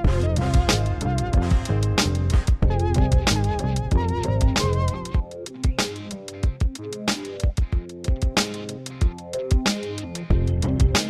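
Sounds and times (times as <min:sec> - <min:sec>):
wavering lead melody: 0:00.0 - 0:06.4
bass: 0:00.0 - 0:07.4, 0:08.3 - 0:11.0
drum beat: 0:00.0 - 0:11.0.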